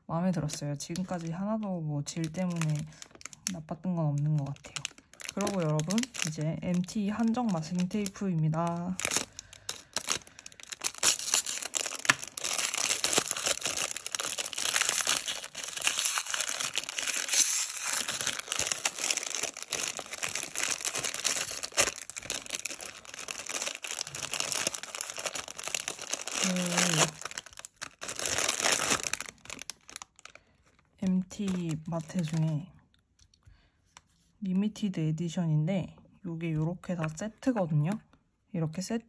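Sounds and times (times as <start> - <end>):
packaging rustling and crackling: 2.1 - 32.6.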